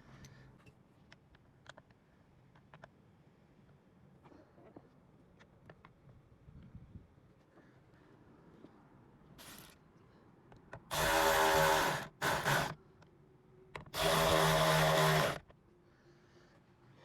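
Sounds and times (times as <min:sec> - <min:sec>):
cordless drill driving screws: 0:10.9 - 0:12.8, 0:13.9 - 0:15.4.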